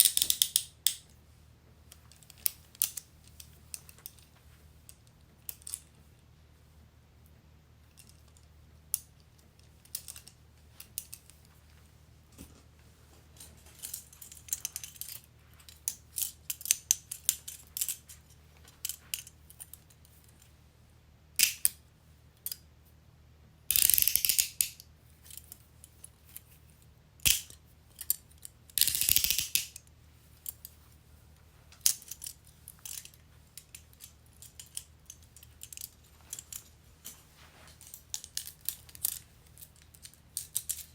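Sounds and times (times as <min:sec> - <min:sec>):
handcuff ratchet clicks: 0:00.0 - 0:01.0, 0:23.7 - 0:25.5, 0:27.2 - 0:29.8
handcuffs clicking and rattling: 0:00.0 - 0:01.1, 0:02.1 - 0:04.3, 0:05.0 - 0:05.9, 0:09.8 - 0:11.5, 0:13.4 - 0:20.5, 0:23.7 - 0:26.6, 0:27.2 - 0:29.8, 0:31.8 - 0:40.9.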